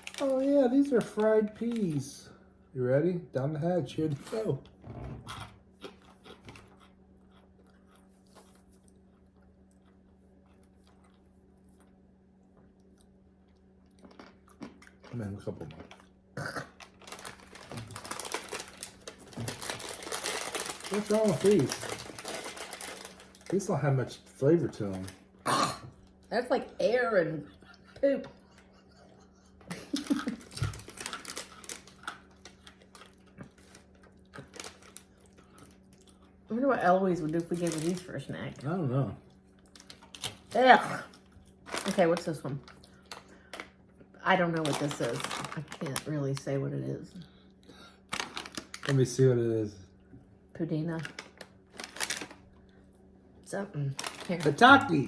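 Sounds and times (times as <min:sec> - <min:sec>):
low steady hum: 0:00.0 - 0:55.0
chewing crunchy food: 0:04.6 - 0:23.7, 0:27.5 - 0:36.5, 0:37.3 - 0:46.1, 0:47.5 - 0:49.0.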